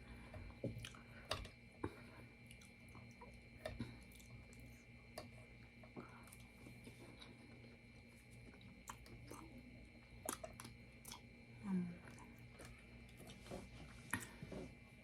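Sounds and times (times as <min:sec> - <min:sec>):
close-up chewing of food: 0:00.5 - 0:11.4.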